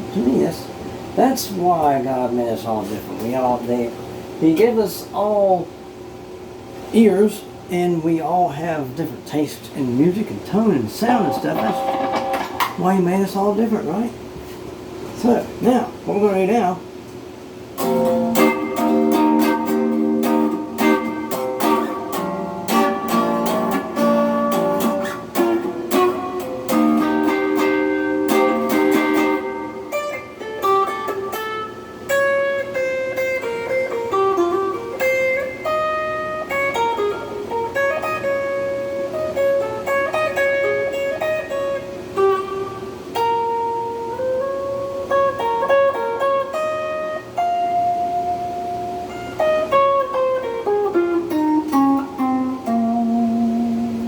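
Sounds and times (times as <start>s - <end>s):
electric guitar through an amp: 10.6s - 14.1s, 17.8s - 54.0s.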